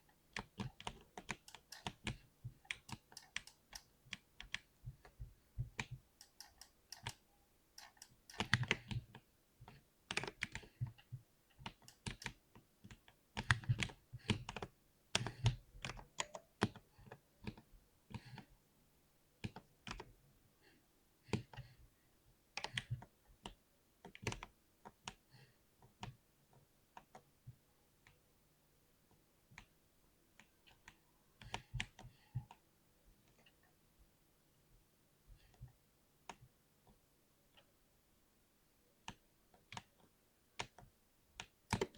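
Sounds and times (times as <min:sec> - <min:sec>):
keyboard keystroke clicks: 0:00.4 - 0:04.7, 0:05.7 - 0:07.2, 0:07.8 - 0:09.0, 0:11.6 - 0:12.4, 0:40.6 - 0:41.9.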